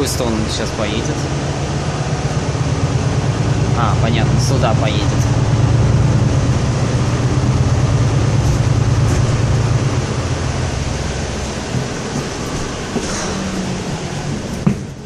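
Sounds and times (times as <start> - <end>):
bus engine drone from inside: 0.0 - 15.0.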